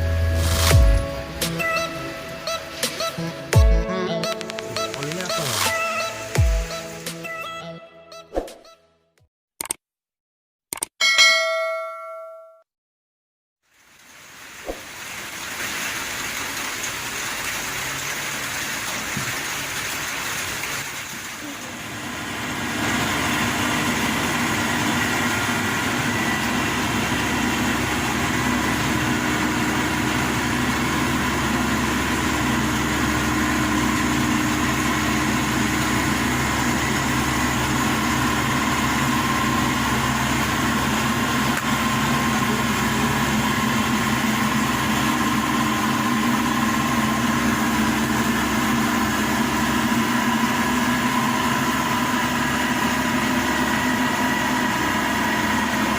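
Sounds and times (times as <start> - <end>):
diesel engine running steadily: 0.0 - 7.4, 21.3 - 55.9.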